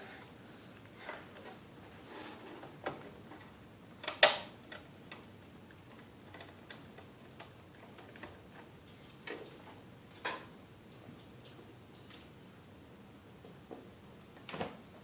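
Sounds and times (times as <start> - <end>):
sharp loud plastic snap: 4.1 - 4.5.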